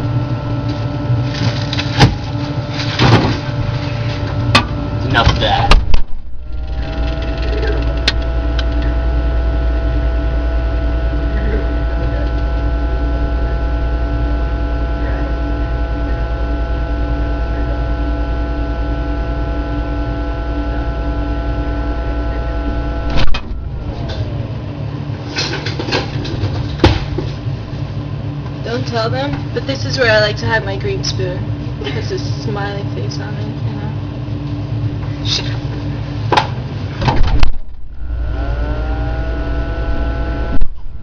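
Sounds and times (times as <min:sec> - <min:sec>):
kitchen appliance humming: 0:00.0 - 0:41.0
steady electronic tones: 0:03.4 - 0:25.2, 0:37.2 - 0:41.0.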